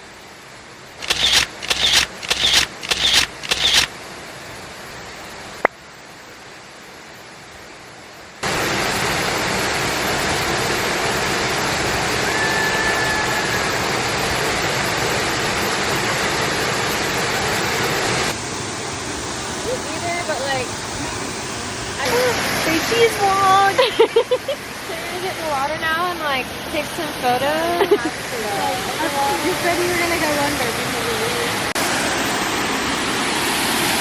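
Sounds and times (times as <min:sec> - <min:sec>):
sharp bursts: 0:01.0 - 0:04.0
waterfall rushing: 0:08.4 - 0:34.0.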